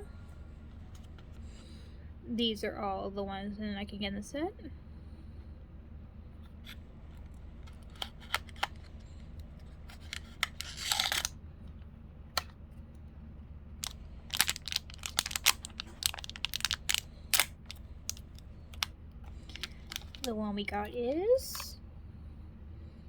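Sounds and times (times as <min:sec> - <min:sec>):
packaging clicks and taps: 0:07.2 - 0:09.0, 0:09.6 - 0:11.3, 0:13.8 - 0:20.3
packaging crinkling: 0:07.2 - 0:11.3, 0:13.8 - 0:20.4
packaging tearing: 0:07.7 - 0:09.0, 0:09.6 - 0:11.3, 0:13.8 - 0:20.3.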